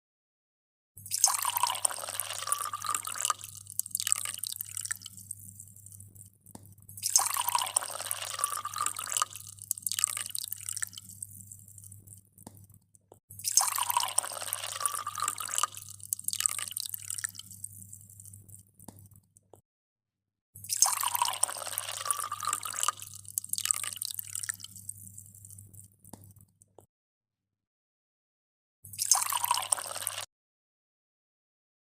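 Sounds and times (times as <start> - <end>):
water pouring and splashing: 1.0 - 12.7, 13.3 - 19.2, 20.6 - 26.5, 28.9 - 30.3.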